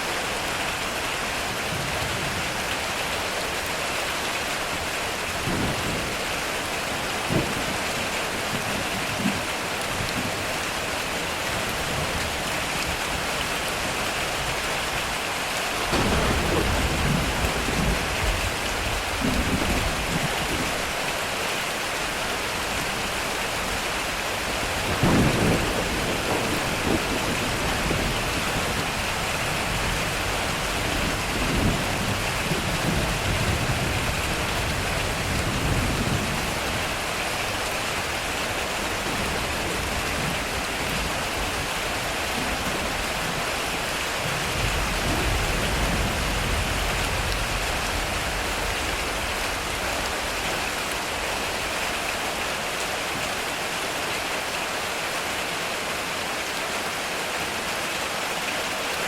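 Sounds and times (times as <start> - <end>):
heavy rain on metal roof: 0.0 - 59.0
thunder rumbling: 15.8 - 21.1, 22.5 - 52.2.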